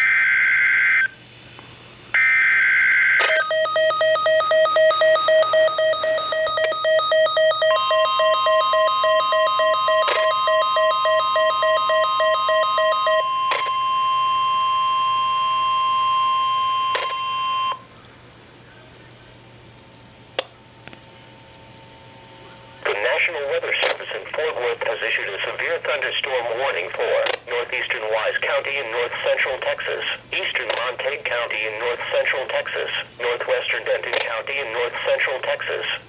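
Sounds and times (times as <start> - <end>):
rapidly pulsed alarm beep: 2.2 - 17.8.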